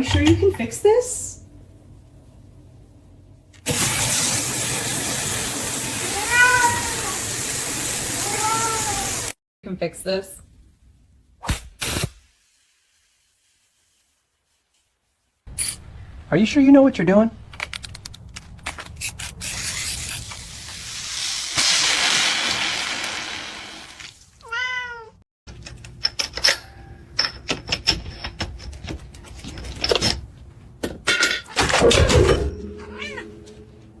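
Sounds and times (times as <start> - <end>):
cat meowing: 6.0 - 7.2, 8.2 - 9.2, 24.4 - 25.2, 32.8 - 33.4.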